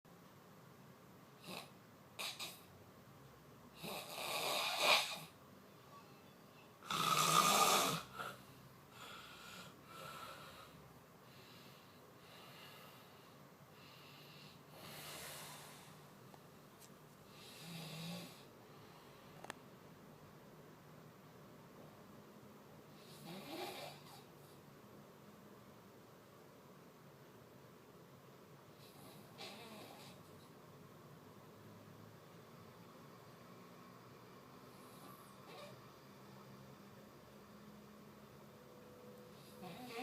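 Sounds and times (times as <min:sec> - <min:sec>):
person snoring: 0:03.8 - 0:05.4, 0:06.8 - 0:10.8, 0:17.3 - 0:18.5.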